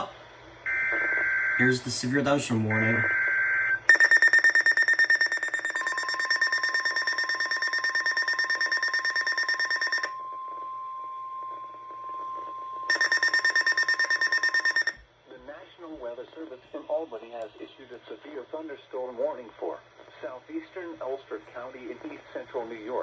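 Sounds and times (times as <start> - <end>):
rapid high alarm beeping: 1.2 - 10.2, 12.8 - 15.0
steady single warning tone: 3.9 - 15.0.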